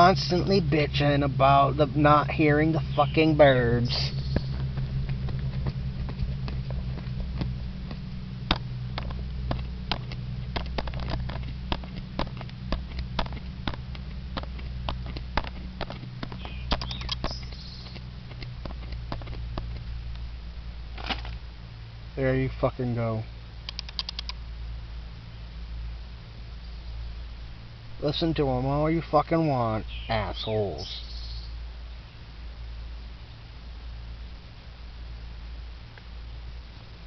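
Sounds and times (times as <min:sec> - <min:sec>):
steady low hum: 0:00.0 - 0:37.0
faint bird chirps: 0:02.7 - 0:04.6, 0:16.3 - 0:18.0, 0:26.5 - 0:27.2, 0:29.8 - 0:32.2
camera autofocus motor clicking: 0:16.3 - 0:18.5.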